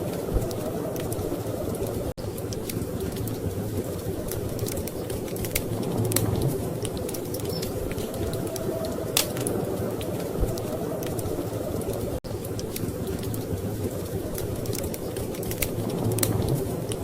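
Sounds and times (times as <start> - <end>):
low rumble: 0.0 - 14.7
wood fire crackling and popping: 0.0 - 17.0.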